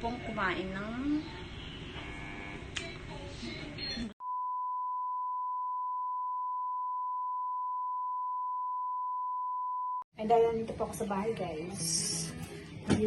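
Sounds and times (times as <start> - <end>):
steady electronic beep tone: 4.2 - 10.1.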